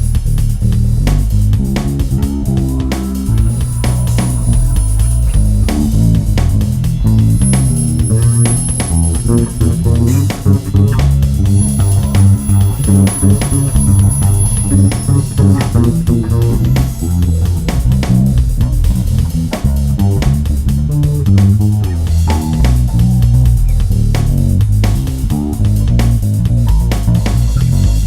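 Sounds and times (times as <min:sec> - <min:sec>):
plucked string instrument solo: 0:02.4 - 0:24.4.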